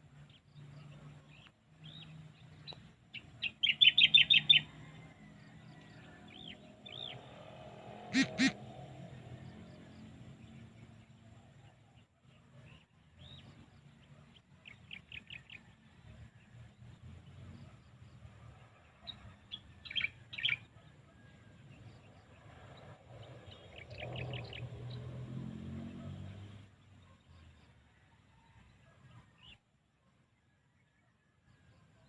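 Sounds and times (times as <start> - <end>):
small birds chirping: 0.3 - 4.7.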